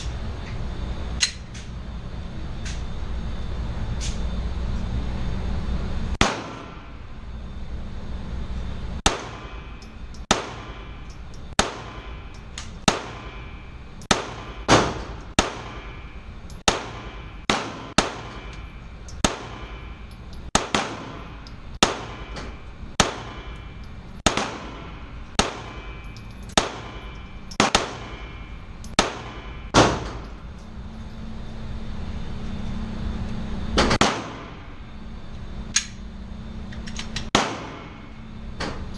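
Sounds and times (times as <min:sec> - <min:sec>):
low hum: 0:00.0 - 0:38.9
pistol shots indoors: 0:06.2 - 0:07.0, 0:09.0 - 0:09.7, 0:10.3 - 0:19.9, 0:20.5 - 0:30.4, 0:33.8 - 0:34.7, 0:37.3 - 0:38.0.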